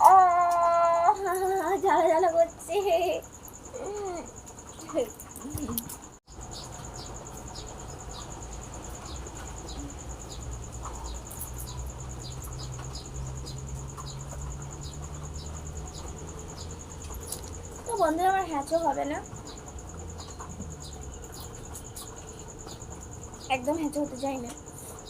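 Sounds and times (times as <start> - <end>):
insects chirring: 0.0 - 25.0.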